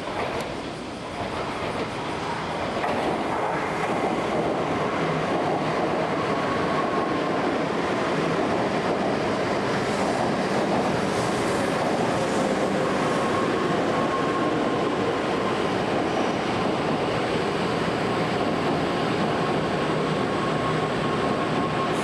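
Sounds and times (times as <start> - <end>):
train rushing noise: 0.0 - 22.0.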